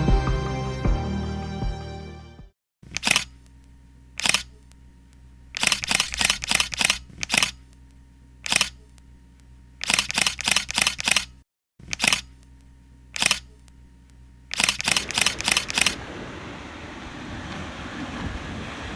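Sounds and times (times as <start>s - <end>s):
faint steady hum: 2.8s - 10.7s, 11.8s - 17.6s
short sharp clicks: 2.9s - 3.6s, 4.2s - 4.8s, 5.6s - 7.8s, 8.4s - 9.0s, 13.2s - 13.7s, 14.5s - 16.0s.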